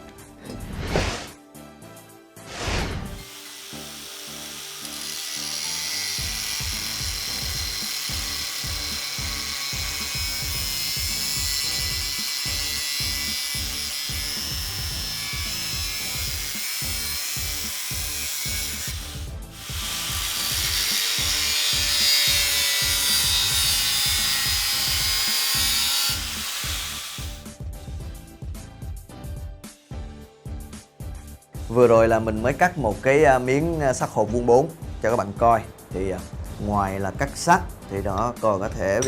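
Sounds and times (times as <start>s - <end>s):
drill disc grinding steel: 3.2s - 27.4s.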